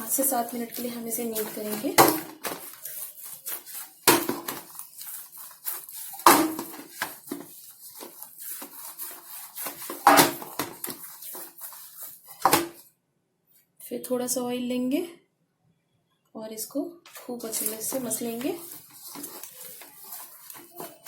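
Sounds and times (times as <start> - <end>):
dough kneading by hand: 0.0 - 12.9, 17.1 - 21.0.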